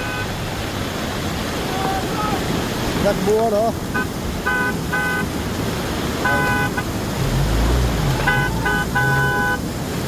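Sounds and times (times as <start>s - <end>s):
vehicle horn honking: 3.9s - 5.3s, 6.2s - 6.9s, 8.1s - 9.6s.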